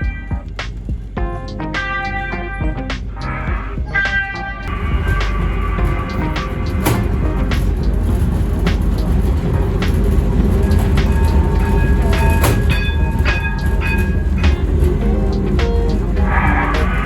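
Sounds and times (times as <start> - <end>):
ride train rumbling on track: 2.7 - 17.0
wheels clicking over rail joints: 4.1 - 17.0.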